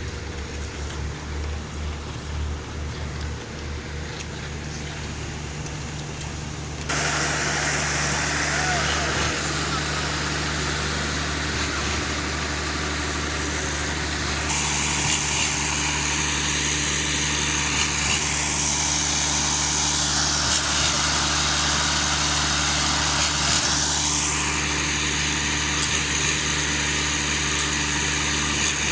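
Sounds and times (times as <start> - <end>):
truck engine humming: 0.0 - 28.8
high hiss: 6.9 - 12.6.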